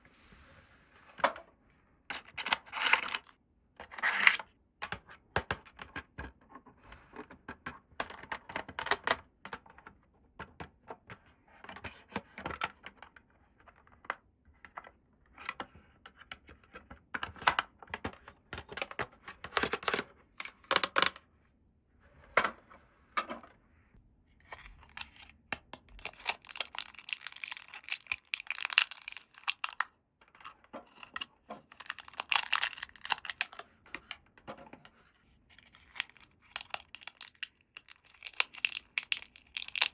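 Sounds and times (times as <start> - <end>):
packaging rustling and tearing: 26.0 - 29.8, 31.8 - 33.5, 35.8 - 39.9
plastic toy pieces clicking: 26.0 - 29.9, 31.7 - 33.5, 35.8 - 39.9.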